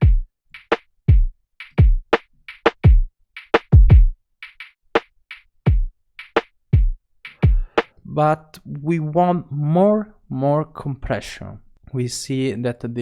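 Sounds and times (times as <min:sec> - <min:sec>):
deep kick drums: 0:00.0 - 0:00.2, 0:01.1 - 0:02.1, 0:02.8 - 0:03.1, 0:03.7 - 0:04.1, 0:05.7 - 0:05.9, 0:06.8 - 0:07.7
hi-hat ticks: 0:01.6 - 0:04.7, 0:07.2 - 0:08.0.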